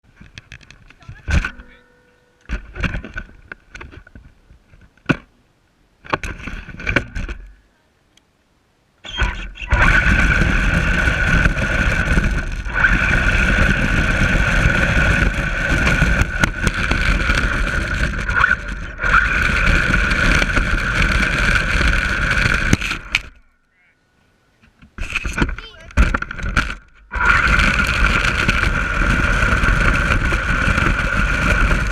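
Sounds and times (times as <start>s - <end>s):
toy truck motor whine: 9.1s - 23.3s.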